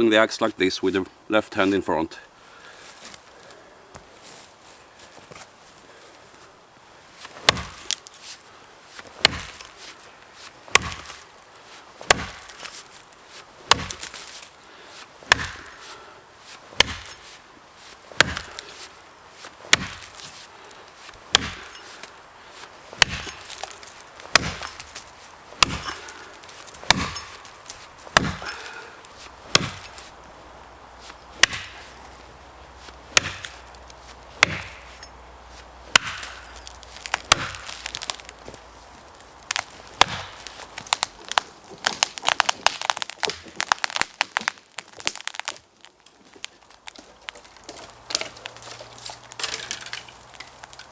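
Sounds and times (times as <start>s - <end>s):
axe chopping into tree trunk: 7.3s - 8.0s, 9.2s - 9.8s, 10.7s - 11.3s, 12.0s - 12.9s, 13.7s - 14.4s, 15.3s - 16.0s, 16.8s - 17.4s, 18.1s - 19.0s, 19.7s - 20.4s, 21.3s - 30.2s, 31.1s - 32.1s, 32.9s - 45.6s, 46.6s - 50.9s.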